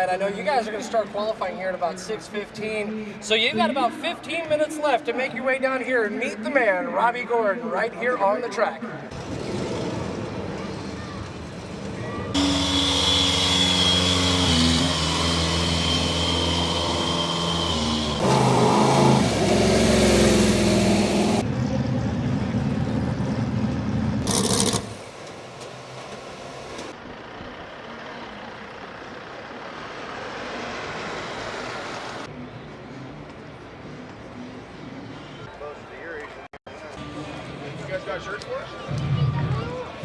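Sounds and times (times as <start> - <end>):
vehicle engine running: 11.3 - 31.2
high whine: 12.4 - 21.4.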